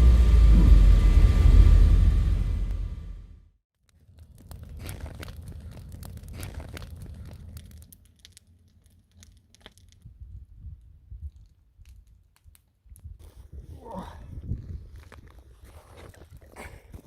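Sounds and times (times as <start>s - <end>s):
low rumble: 0.0s - 3.6s
crackling handling noise: 3.8s - 10.1s.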